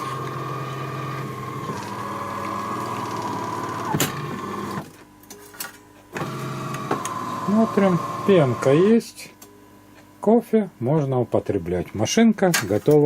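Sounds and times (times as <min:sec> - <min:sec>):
coffee machine humming: 0:00.0 - 0:05.0, 0:06.1 - 0:09.0.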